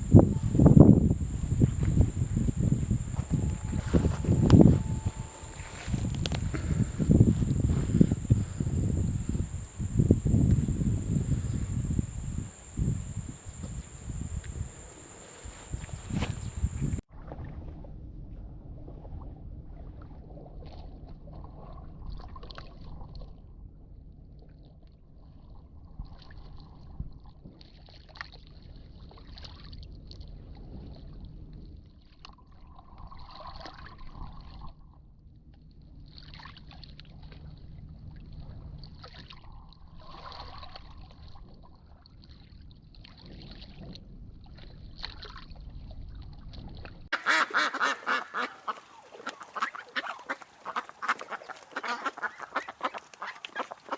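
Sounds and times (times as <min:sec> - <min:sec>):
steady low rumble: 0:00.0 - 0:17.0
ducks calling: 0:47.2 - 0:53.9.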